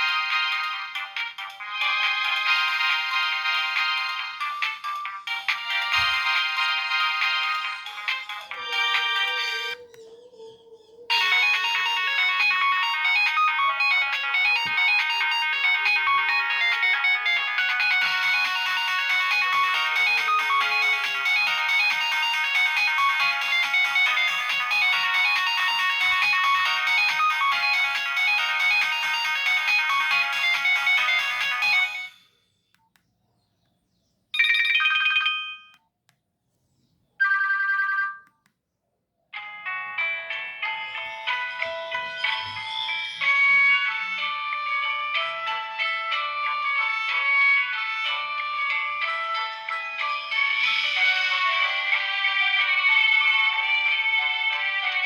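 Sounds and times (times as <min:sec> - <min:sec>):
fast electronic ringtone: 0:00.0 - 0:09.8, 0:11.1 - 0:32.2, 0:34.4 - 0:35.8, 0:37.2 - 0:38.2, 0:40.6 - 0:45.2.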